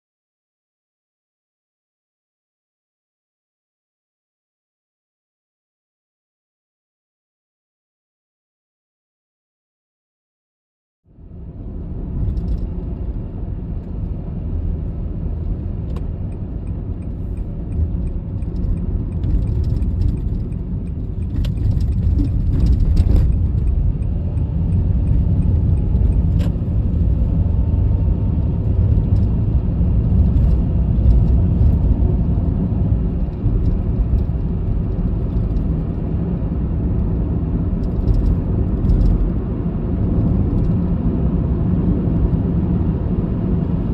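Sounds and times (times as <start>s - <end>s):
road and engine rumble: 11.1s - 43.9s
faint clicks and rattles: 15.9s - 26.6s.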